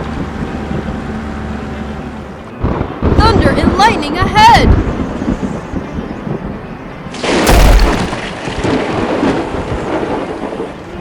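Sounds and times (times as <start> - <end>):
thunder rumbling: 7.1 - 11.0
steady rain: 7.5 - 11.0.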